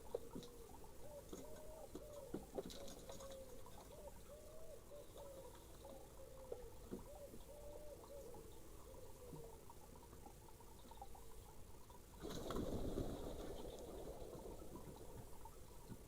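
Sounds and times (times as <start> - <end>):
dove cooing: 0.0 - 16.0.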